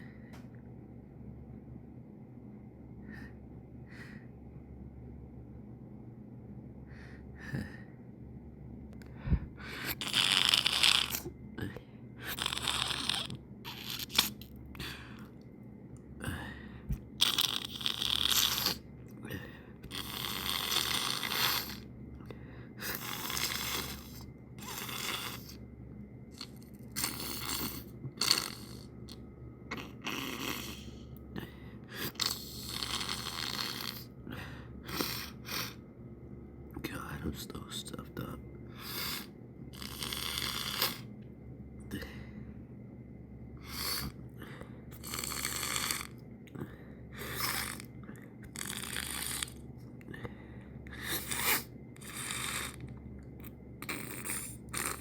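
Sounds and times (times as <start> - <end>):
person sniffling and breathing hard: 6.9 - 8.0, 9.0 - 15.4, 16.2 - 25.6, 29.9 - 35.8, 38.7 - 41.1, 43.6 - 52.8.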